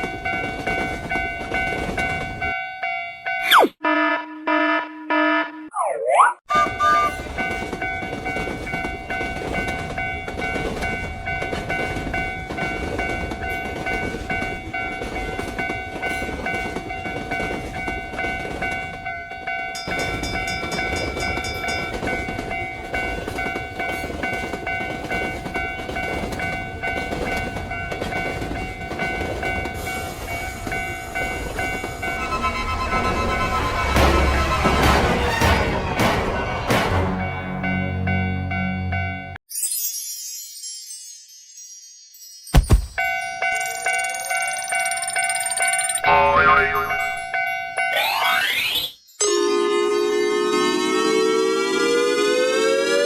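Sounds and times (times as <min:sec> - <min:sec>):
train rumble and wheel clatter: 0:00.0 - 0:03.4, 0:06.5 - 0:39.4
steady high tone: 0:46.0 - 0:49.6.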